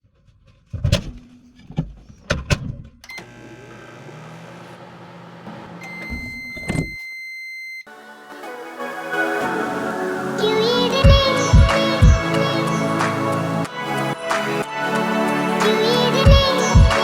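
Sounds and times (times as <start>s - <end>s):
high electronic tone: 5.8s - 7.1s.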